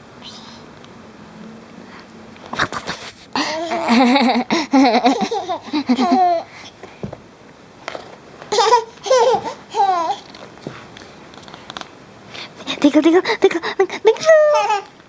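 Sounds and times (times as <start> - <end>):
young child laughing: 2.6 - 6.5, 8.5 - 10.2.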